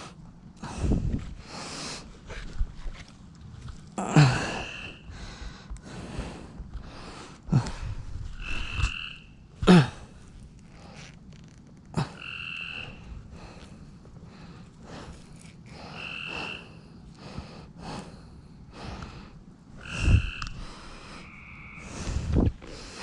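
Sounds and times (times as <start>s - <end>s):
frogs trilling: 4.2s - 5.1s, 8.4s - 9.5s, 12.0s - 13.7s, 15.7s - 16.8s, 19.8s - 23.0s.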